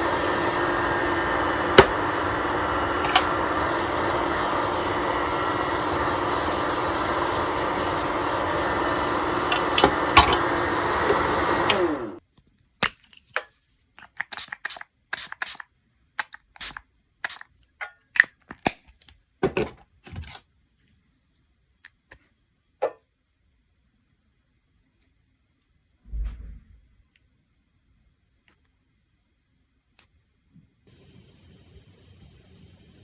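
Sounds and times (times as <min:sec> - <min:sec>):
electric nail drill running: 0:00.0 - 0:12.2.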